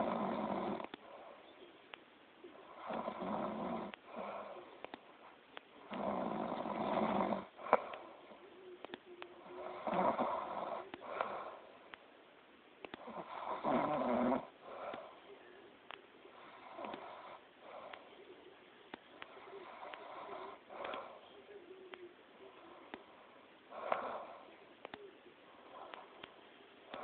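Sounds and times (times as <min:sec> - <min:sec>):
person snoring loudly: 0:13.2 - 0:14.5.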